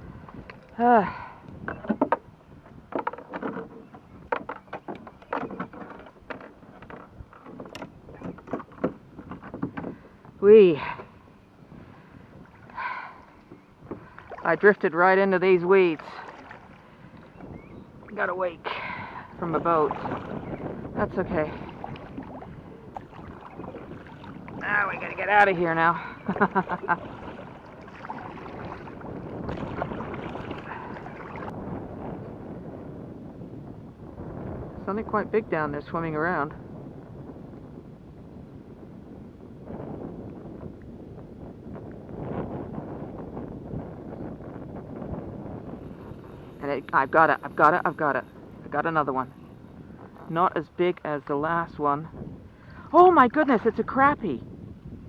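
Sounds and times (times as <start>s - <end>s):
waves splashing against kayak hull: 1.5s - 31.8s.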